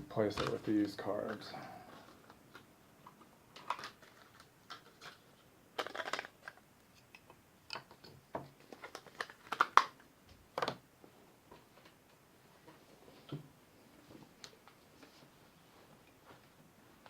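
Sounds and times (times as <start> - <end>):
small clicks and rustles: 0.3 - 10.8.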